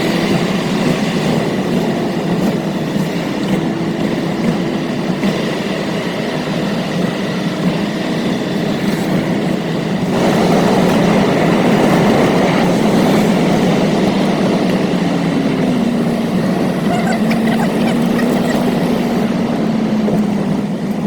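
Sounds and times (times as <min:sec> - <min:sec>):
moving vehicle travelling noise: 0:00.0 - 0:21.0.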